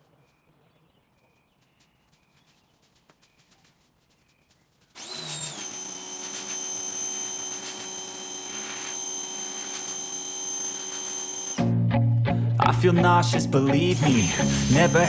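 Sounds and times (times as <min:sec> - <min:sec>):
pressure washer whine: 0:05.0 - 0:11.7, 0:13.9 - 0:15.0.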